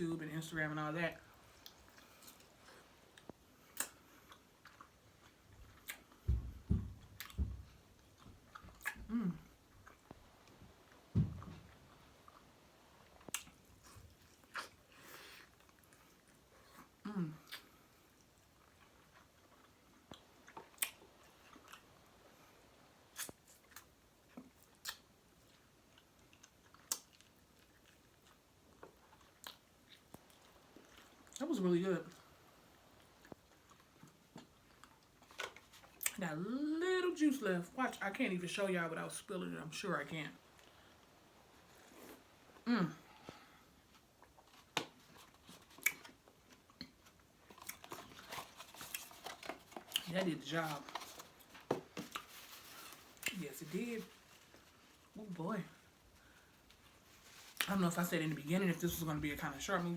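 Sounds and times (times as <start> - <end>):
low chewing thuds: 1.4 - 17.0
chewing and mouth sounds: 1.5 - 6.3, 7.0 - 22.3, 23.1 - 31.4, 32.1 - 36.2, 43.2 - 50.2.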